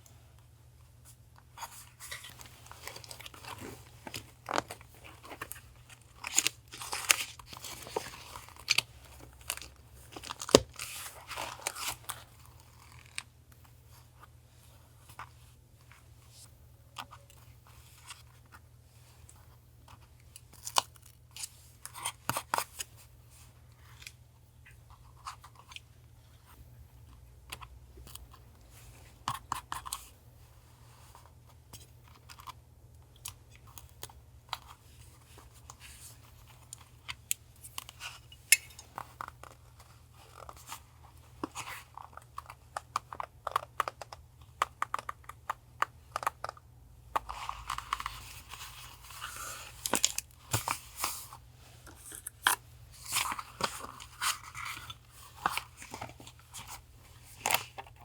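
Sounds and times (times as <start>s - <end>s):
paper crinkling and rustling: 1.6s - 13.3s, 47.2s - 58.0s.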